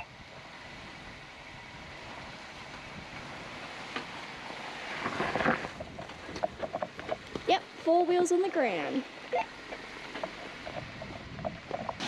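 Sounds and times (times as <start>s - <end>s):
wheels crunching and knocking: 2.0s - 7.6s, 9.6s - 12.0s
tyres on rock: 9.8s - 12.0s.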